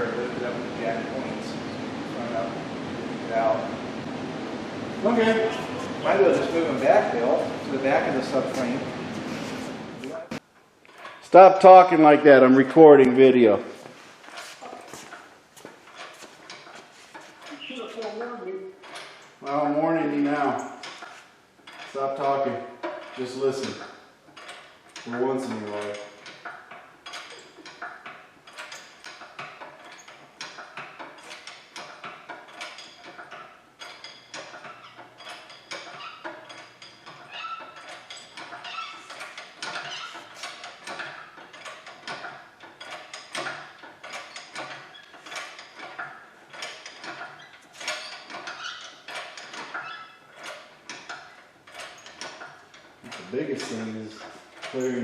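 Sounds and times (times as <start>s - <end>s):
ratchet rattling: 15.9s - 55.0s.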